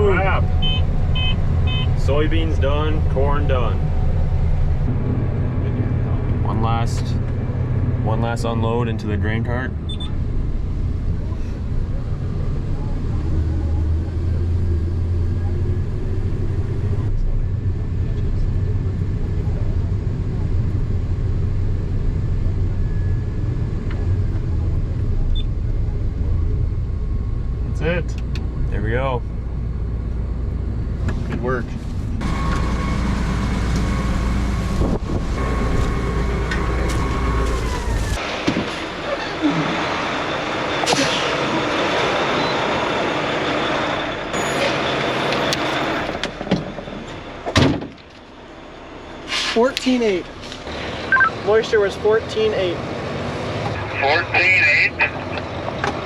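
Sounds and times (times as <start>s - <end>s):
farm machinery engine rumbling: 0.0s - 56.0s
farm machinery engine running: 31.8s - 52.2s.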